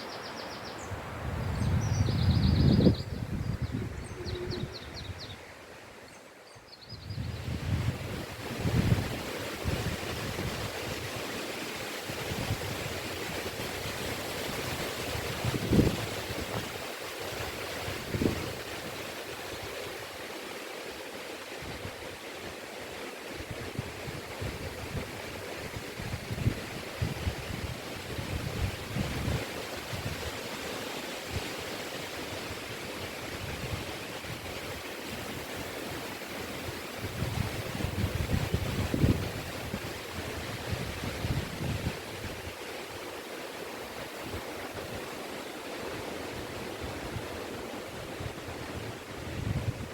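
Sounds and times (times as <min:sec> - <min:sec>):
wind rushing through trees: 0:00.0 - 0:49.9
wind buffeting microphone: 0:00.8 - 0:05.3, 0:07.0 - 0:10.8, 0:37.0 - 0:42.6, 0:46.3 - 0:49.9
wind gusts buffeting microphone: 0:00.8 - 0:05.4, 0:07.0 - 0:11.2, 0:12.0 - 0:18.8, 0:23.4 - 0:30.3, 0:32.3 - 0:42.7, 0:45.8 - 0:49.9.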